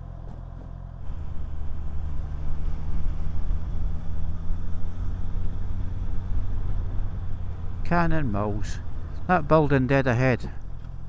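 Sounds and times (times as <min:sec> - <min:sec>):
motorcycle engine running: 0:00.0 - 0:11.0
wind and road noise: 0:00.0 - 0:11.0.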